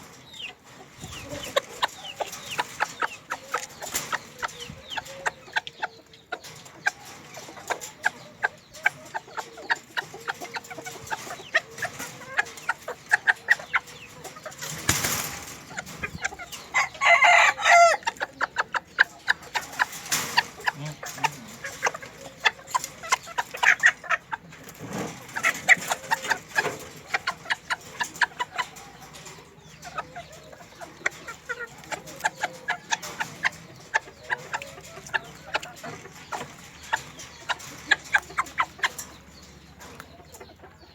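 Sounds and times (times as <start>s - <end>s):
chickens clucking: 0.0s - 40.9s
rooster crowing: 16.8s - 18.0s.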